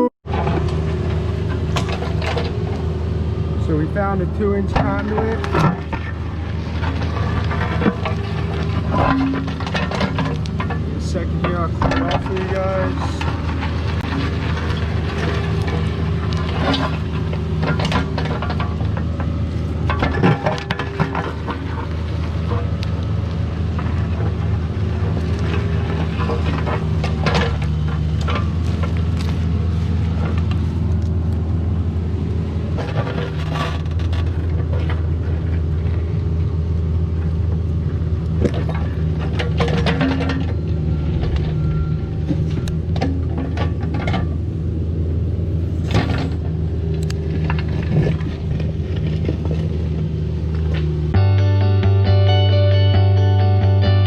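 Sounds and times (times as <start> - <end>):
excavator diesel engine running: 0.0 - 54.0
bucket scraping dirt and rock: 3.6 - 30.9, 32.7 - 35.8.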